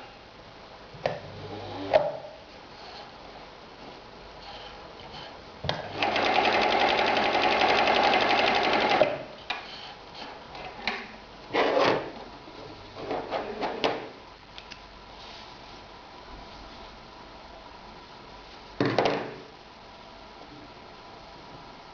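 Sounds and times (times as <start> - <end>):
sewing machine stitching leather: 5.8 - 9.3.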